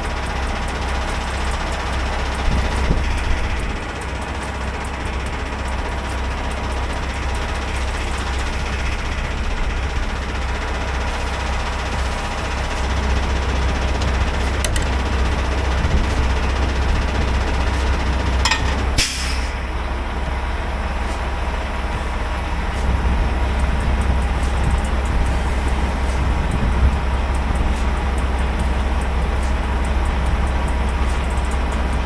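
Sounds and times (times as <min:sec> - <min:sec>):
truck diesel engine idling: 0:00.0 - 0:32.0
air hiss: 0:19.0 - 0:19.7.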